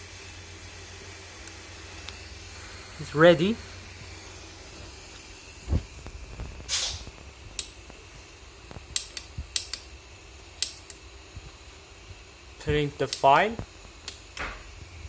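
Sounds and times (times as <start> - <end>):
steady low hum: 0.0 - 15.0
sharp clicks and taps: 8.9 - 9.9.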